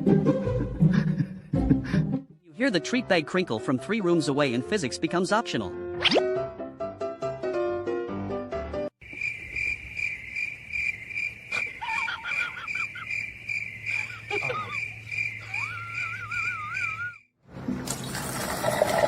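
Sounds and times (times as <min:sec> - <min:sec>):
cricket chirping: 0:09.0 - 0:17.3
wavering whistle-like calls: 0:15.4 - 0:17.3.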